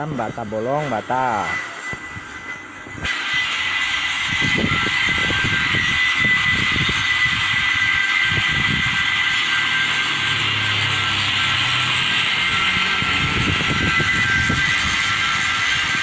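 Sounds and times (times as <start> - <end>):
diesel engine running: 3.2 - 16.0.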